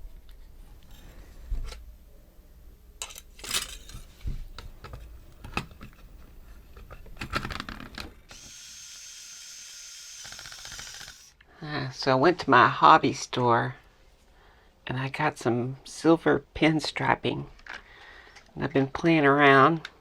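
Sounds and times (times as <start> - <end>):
small parts clicking and knocking: 3.0 - 11.3
high-pitched whir: 8.3 - 11.3.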